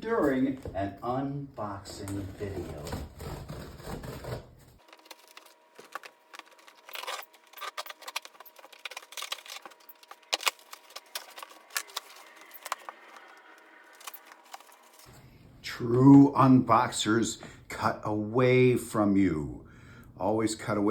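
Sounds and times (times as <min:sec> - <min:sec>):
cardboard crackling: 0:01.9 - 0:15.1
blade cutting cardboard box: 0:02.3 - 0:12.9.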